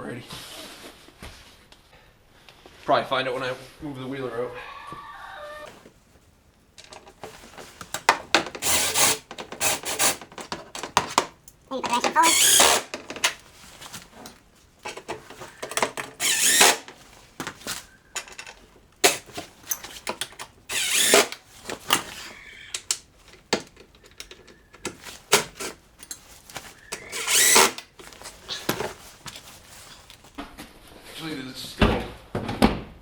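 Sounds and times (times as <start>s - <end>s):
clicks and handling noise: 5.6s - 30.6s
cordless drill bursts: 8.0s - 11.0s, 12.0s - 13.4s, 15.7s - 17.0s, 19.0s - 19.3s, 20.0s - 23.1s, 26.8s - 28.0s.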